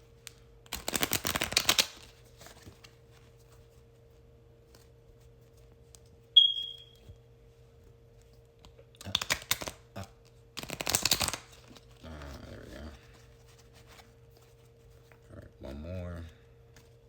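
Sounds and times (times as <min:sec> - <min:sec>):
cards being shuffled by hand: 0:00.1 - 0:06.3, 0:07.7 - 0:17.0
short high-pitched electronic beep: 0:06.4 - 0:07.0.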